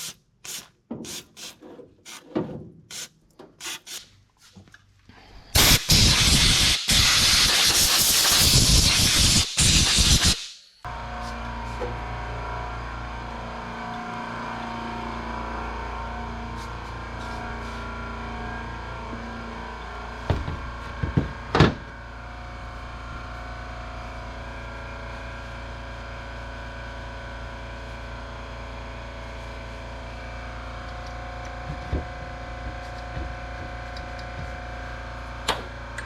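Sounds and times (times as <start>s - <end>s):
steady background hum: 10.7s - 26.4s
parts knocking and clattering: 20.2s - 22.0s, 30.9s - 34.7s.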